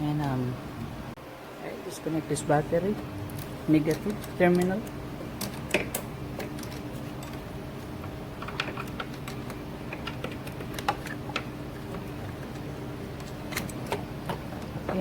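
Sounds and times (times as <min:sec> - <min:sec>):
steady background hum: 0:00.0 - 0:15.0
hand tools clicking and tapping: 0:03.9 - 0:07.4, 0:08.4 - 0:15.0.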